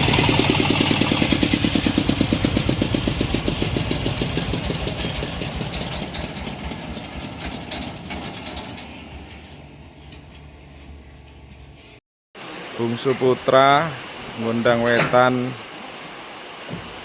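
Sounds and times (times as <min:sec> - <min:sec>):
diesel engine pulsing: 0:00.0 - 0:11.3.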